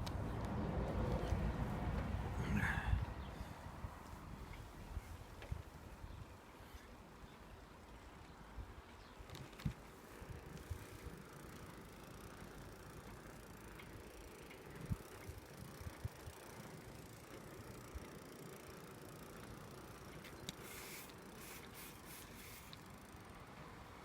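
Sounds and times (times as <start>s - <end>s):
bicycle low rumble: 0.0s - 24.0s
short hissing sounds: 20.6s - 22.8s.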